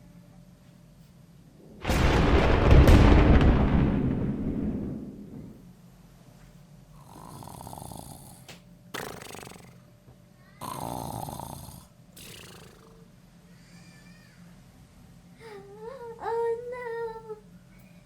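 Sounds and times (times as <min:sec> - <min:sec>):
person snoring: 0:07.0 - 0:09.8, 0:10.6 - 0:13.0.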